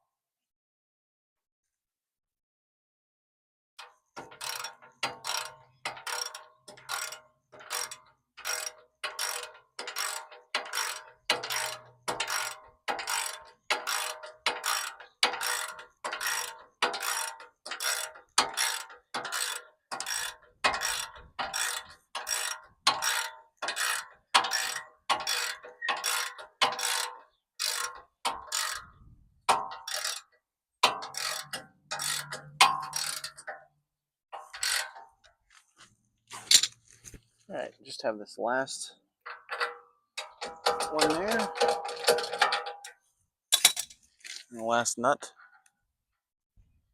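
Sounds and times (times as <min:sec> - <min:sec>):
ratchet wrench clicking: 0:03.8 - 0:28.9, 0:29.5 - 0:33.5, 0:34.4 - 0:35.0.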